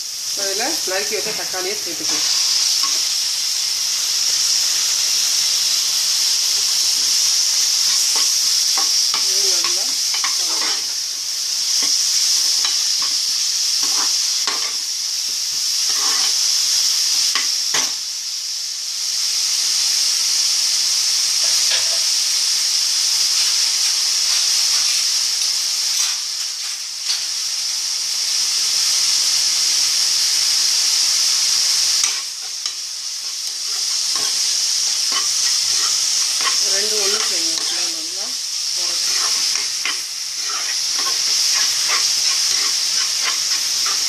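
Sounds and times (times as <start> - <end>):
onions sizzling in hot oil: 0.0 - 44.0
spoon stirring and scraping: 7.5 - 11.0, 13.8 - 14.8, 15.9 - 16.4, 32.0 - 38.0, 38.9 - 44.0.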